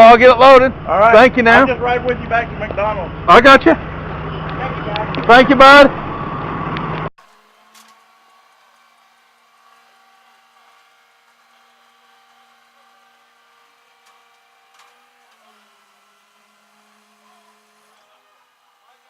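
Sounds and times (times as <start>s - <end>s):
truck mechanical hum: 0.0s - 19.0s.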